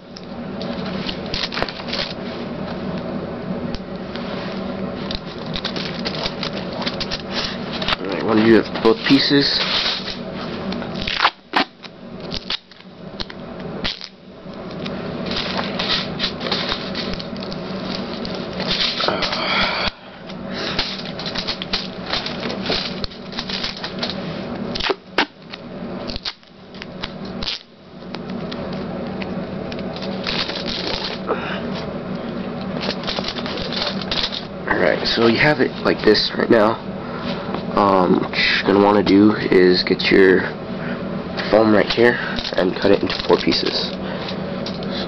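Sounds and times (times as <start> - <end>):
tin foil crinkling: 5.1 - 8.2, 20.6 - 24.2, 30.0 - 31.2, 32.8 - 34.5, 42.4 - 43.9.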